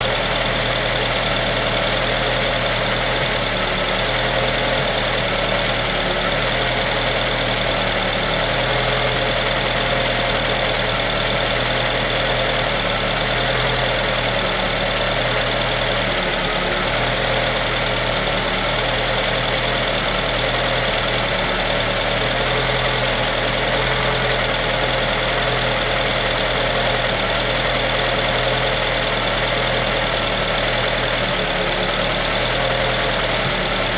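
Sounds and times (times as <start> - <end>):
car engine idling roughly: 0.0 - 33.9.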